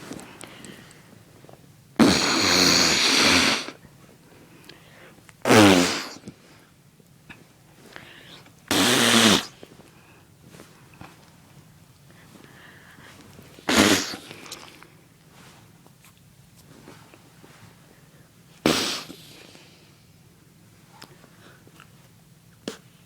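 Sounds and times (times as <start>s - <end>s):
loud farts: 2.0s - 3.8s, 5.5s - 6.2s, 8.7s - 9.6s, 13.7s - 14.3s, 18.7s - 19.3s.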